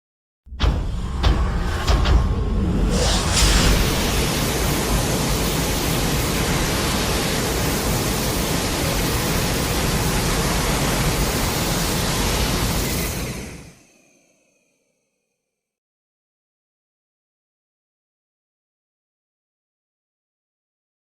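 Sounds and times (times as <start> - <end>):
rushing blast of noise: 0.5 - 14.7.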